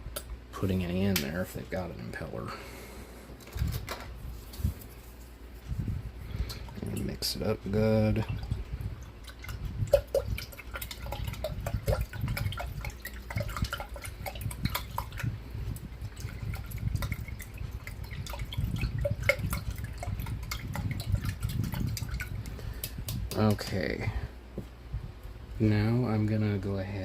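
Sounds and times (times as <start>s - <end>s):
liquid sloshing and dripping: 8.1s - 23.6s.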